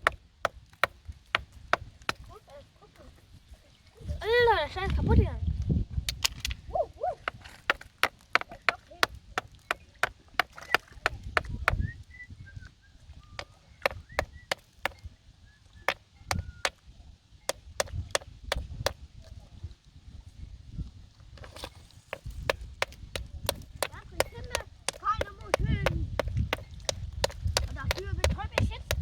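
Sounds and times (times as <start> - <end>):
stone knocking against stone: 7.3 - 11.8, 13.4 - 15.0, 15.9 - 16.5, 17.5 - 19.0, 21.4 - 29.0.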